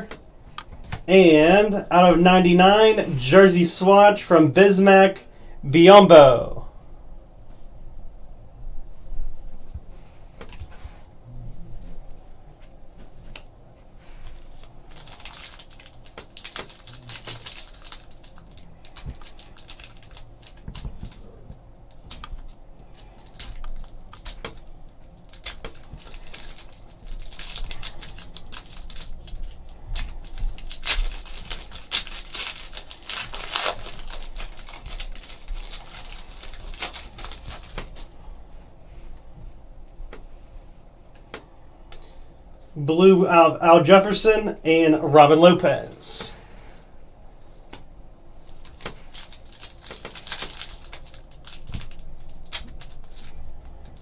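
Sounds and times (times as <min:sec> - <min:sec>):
cards and wrappers rustling: 0:14.0 - 0:38.2, 0:47.6 - 0:54.0.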